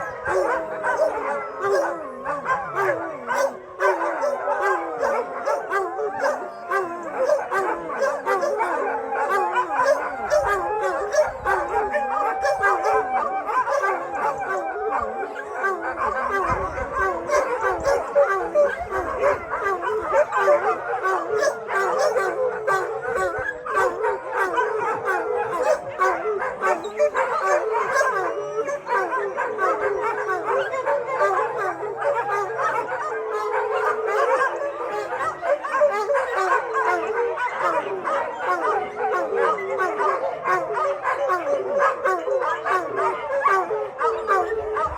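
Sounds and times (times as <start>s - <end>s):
dogs howling: 0.0s - 44.9s
dogs yipping and barking: 0.0s - 44.9s.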